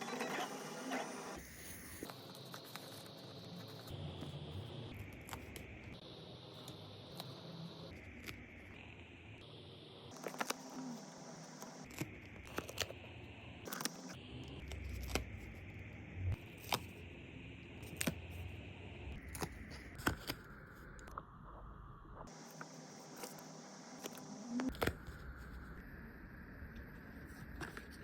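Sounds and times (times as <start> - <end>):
stickers clicking: 11.6 - 13.0.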